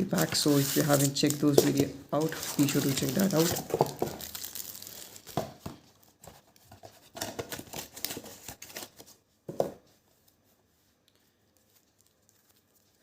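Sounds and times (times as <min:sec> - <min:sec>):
packaging crinkling and tearing: 0:00.0 - 0:09.1.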